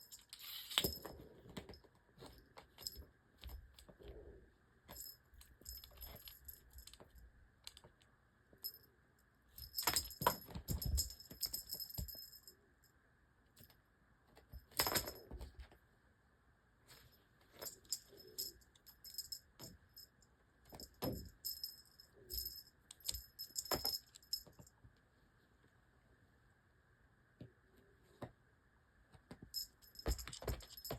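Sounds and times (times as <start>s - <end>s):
small jingle bell rattling: 4.9s - 7.2s, 9.6s - 12.5s, 17.6s - 24.6s, 29.5s - 30.9s.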